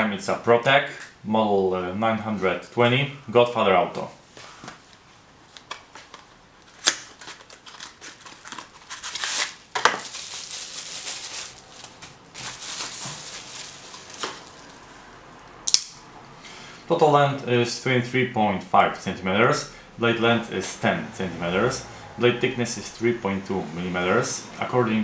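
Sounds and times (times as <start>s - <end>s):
rustling handling noises: 3.9s - 15.5s.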